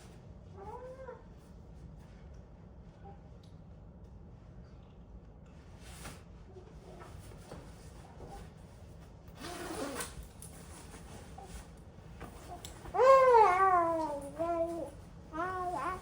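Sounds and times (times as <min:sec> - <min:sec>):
rustling and handling noise: 0:05.7 - 0:16.0.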